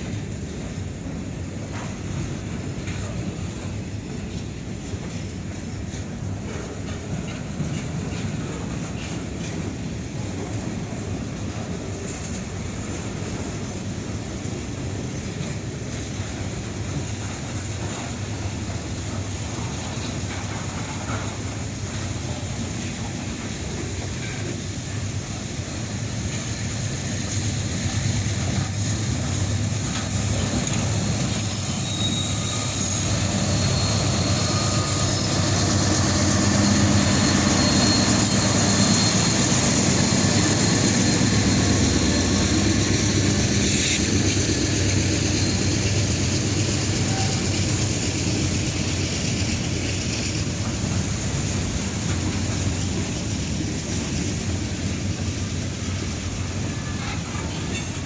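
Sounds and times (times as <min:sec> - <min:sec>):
steel wheels rumbling on rail: 0:00.0 - 0:58.0
faint wheel squeal: 0:28.7 - 0:44.1, 0:44.8 - 0:48.0.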